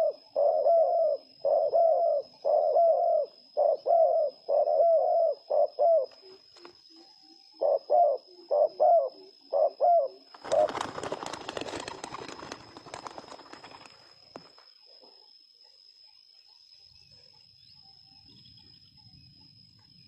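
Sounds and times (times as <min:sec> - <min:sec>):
dove cooing: 0:00.0 - 0:15.2.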